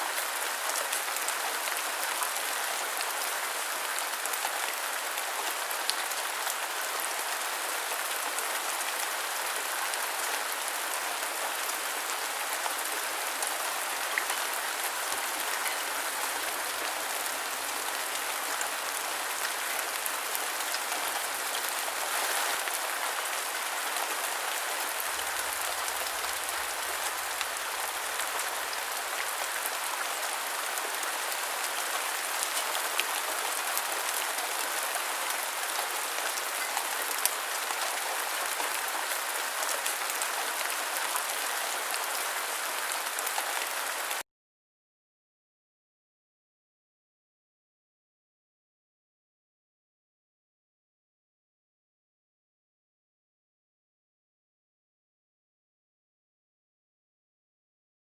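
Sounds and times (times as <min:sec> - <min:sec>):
steady rain pattering: 0:00.0 - 0:44.2.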